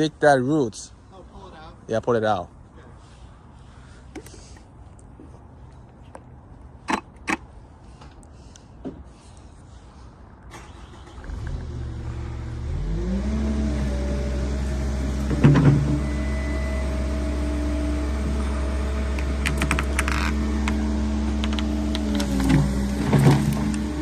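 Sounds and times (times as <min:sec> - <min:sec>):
excavator diesel engine: 0:10.5 - 0:24.0.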